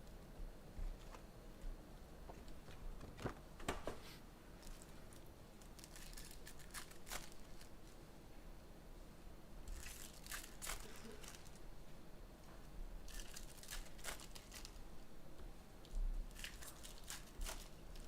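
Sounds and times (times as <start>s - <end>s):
wrappers torn and crinkled: 4.6s - 7.7s, 9.7s - 11.6s, 13.0s - 14.8s, 16.3s - 18.0s.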